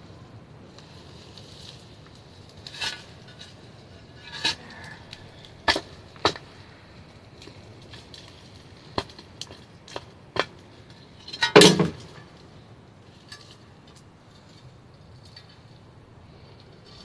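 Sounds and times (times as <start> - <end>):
clattering scrape: 2.5 - 6.5.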